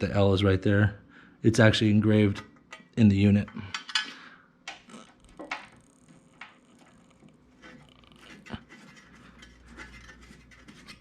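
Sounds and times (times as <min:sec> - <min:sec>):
metal screws clicking and scraping: 0:07.6 - 0:11.0.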